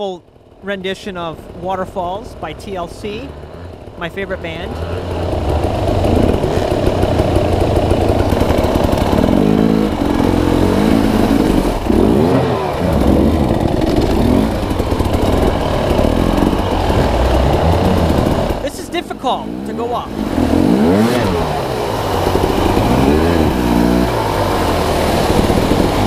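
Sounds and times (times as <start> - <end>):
dirt bike engine revving: 0.0 - 26.0.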